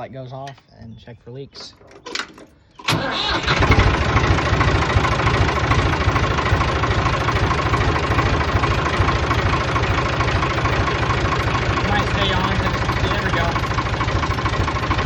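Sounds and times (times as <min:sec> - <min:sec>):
tractor diesel engine idling: 0:02.8 - 0:15.0.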